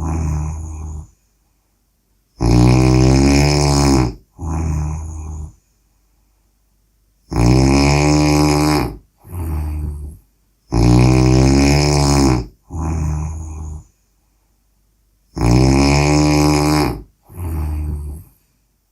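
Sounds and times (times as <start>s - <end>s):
person snoring: 0.0s - 1.2s, 2.4s - 5.6s, 7.3s - 14.0s, 15.3s - 18.4s
quiet breath: 0.0s - 2.4s, 4.1s - 7.3s, 8.8s - 10.8s, 12.4s - 15.4s, 16.9s - 18.9s.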